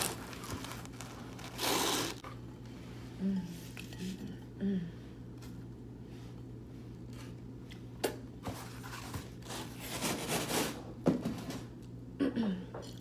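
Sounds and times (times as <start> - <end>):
steady low hum: 0.0 - 9.5.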